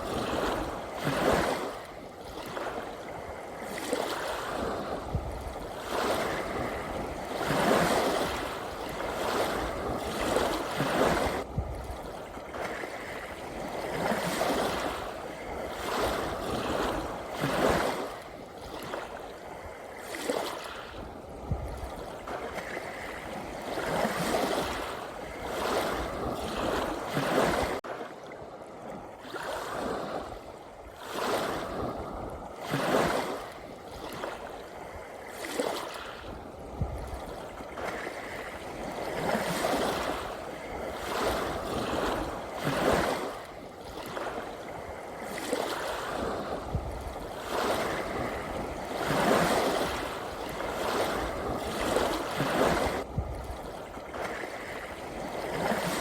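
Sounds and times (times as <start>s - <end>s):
ocean waves washing ashore: 0.0s - 56.0s.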